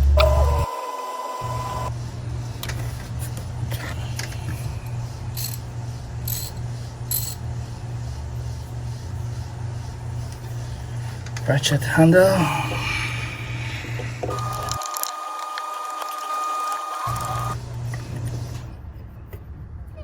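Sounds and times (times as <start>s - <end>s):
steady low hum: 1.3s - 15.4s
metal hand tools clinking: 5.4s - 5.6s.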